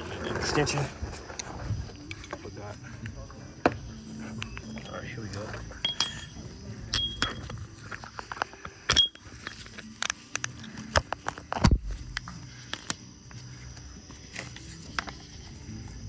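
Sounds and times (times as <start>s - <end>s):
metal hand tools clinking: 1.9s - 3.2s, 4.2s - 13.8s.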